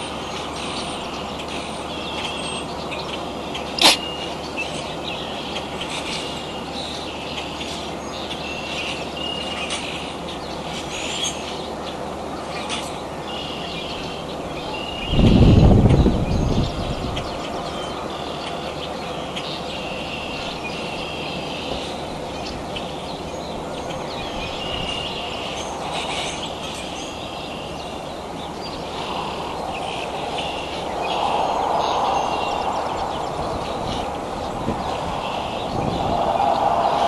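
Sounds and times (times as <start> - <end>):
small birds chirping: 0.0 - 37.0
broad rumble: 28.2 - 37.0.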